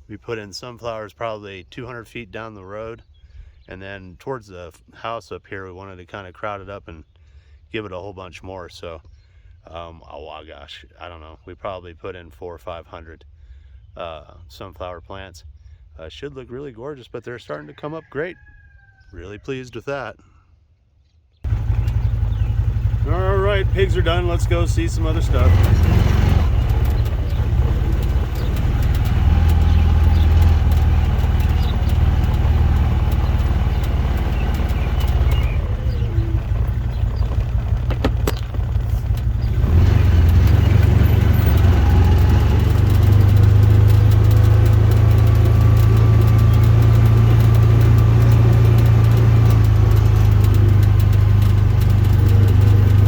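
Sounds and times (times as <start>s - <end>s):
vehicle engine running: 21.5s - 53.0s.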